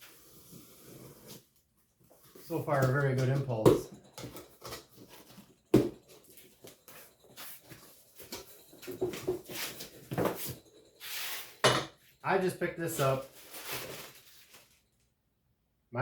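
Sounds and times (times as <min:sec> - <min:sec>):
packaging rustling: 0:12.9 - 0:15.0.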